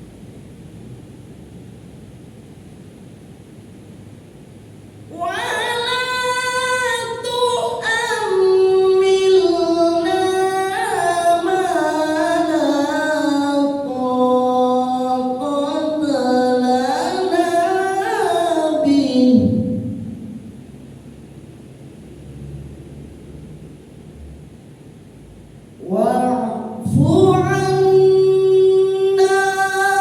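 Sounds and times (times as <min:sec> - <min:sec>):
person chanting melodically: 0:05.1 - 0:20.4, 0:25.8 - 0:30.0.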